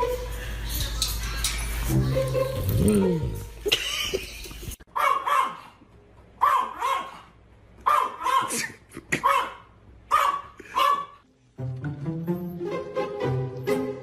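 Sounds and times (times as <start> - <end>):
dog barking: 4.9 - 5.8, 6.4 - 11.2.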